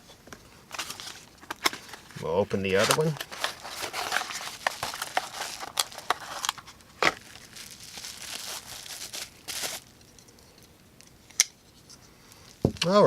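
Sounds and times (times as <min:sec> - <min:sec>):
bubble wrap crinkling: 0:00.7 - 0:10.2.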